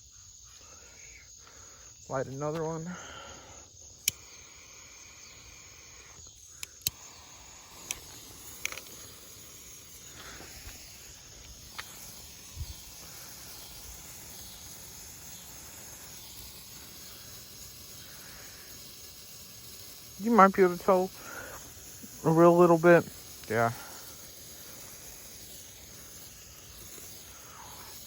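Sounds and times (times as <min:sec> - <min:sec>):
crickets chirping: 0:00.0 - 0:28.0
sharp clicks and pops: 0:03.9 - 0:04.4, 0:06.0 - 0:28.0.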